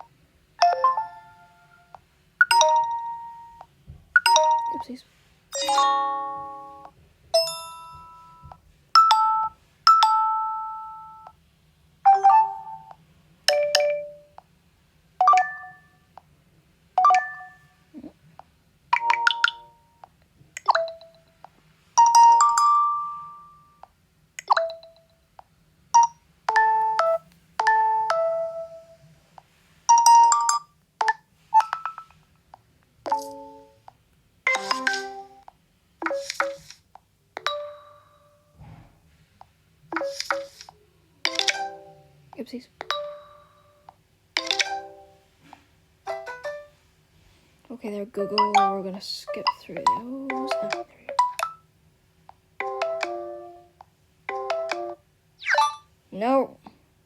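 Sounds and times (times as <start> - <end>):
phone notification chimes: 0.6 - 1.9, 4.2 - 4.9, 5.6 - 11.3, 26.0 - 28.9, 34.5 - 35.4.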